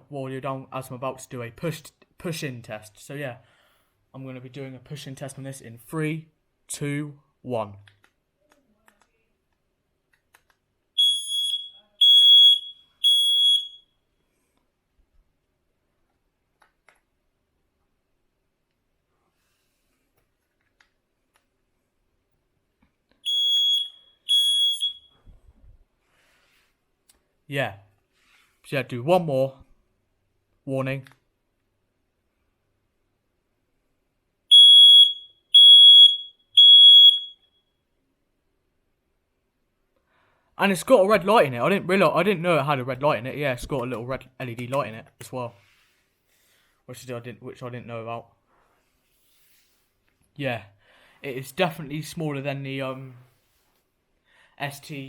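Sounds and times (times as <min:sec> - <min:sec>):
smoke alarm beeps: 0:11.0 - 0:14.0, 0:23.2 - 0:25.3, 0:34.5 - 0:37.8.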